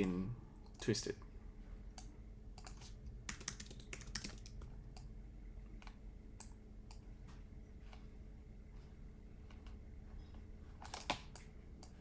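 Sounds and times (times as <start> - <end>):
faint steady hum: 0.0 - 12.0
keyboard keys clicking: 2.6 - 4.6.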